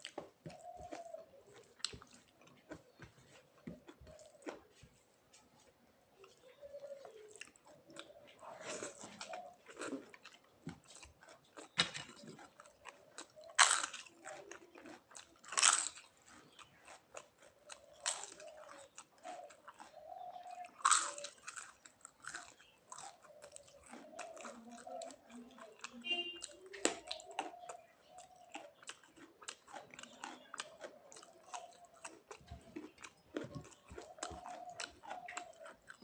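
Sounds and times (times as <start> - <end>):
chewing crisp food: 0.0 - 36.0
loud crunching bites: 8.7 - 19.9, 20.7 - 24.6.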